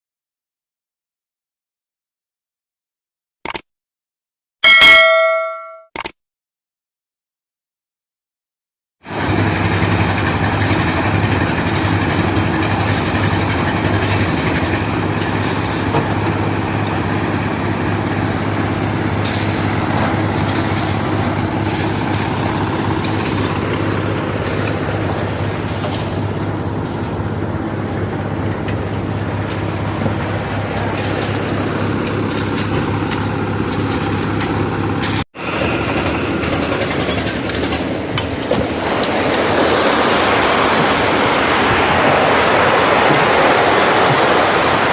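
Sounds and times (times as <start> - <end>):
noisy rattle: 9.1 - 27.3, 28.4 - 39.5
machine engines humming: 9.2 - 44.9.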